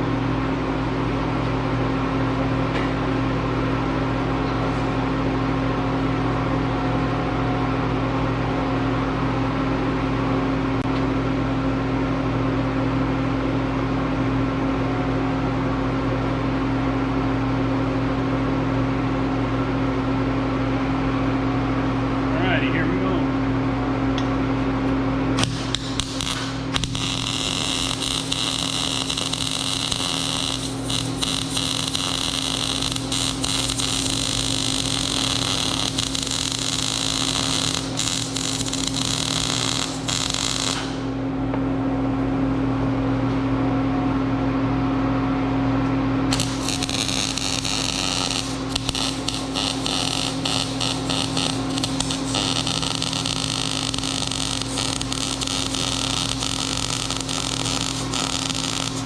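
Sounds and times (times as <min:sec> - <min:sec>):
welder electrical hum: 0:00.0 - 0:59.0
welding arc crackling and hissing: 0:25.4 - 0:41.2, 0:46.3 - 0:59.0.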